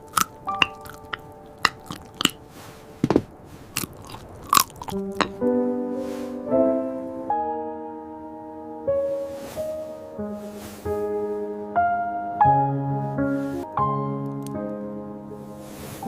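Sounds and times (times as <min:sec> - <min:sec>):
crunching and chewing crisp food: 0:00.0 - 0:02.9, 0:03.6 - 0:05.4
soft background music: 0:00.0 - 0:03.2, 0:04.0 - 0:16.0.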